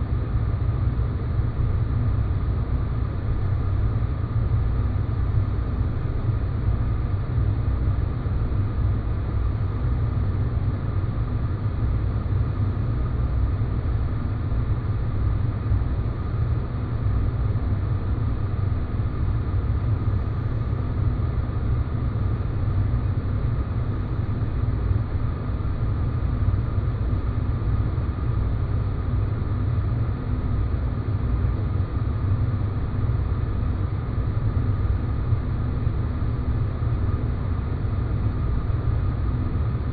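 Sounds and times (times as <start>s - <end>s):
deep noise drone: 0.0s - 39.9s.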